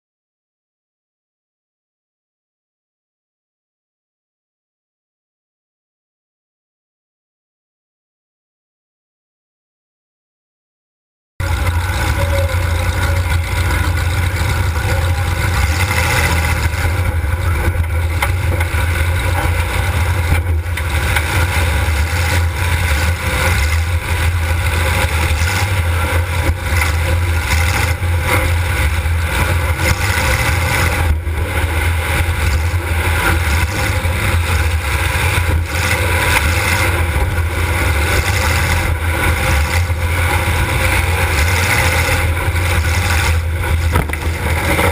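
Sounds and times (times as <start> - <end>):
car engine running loud: 11.4 - 44.9.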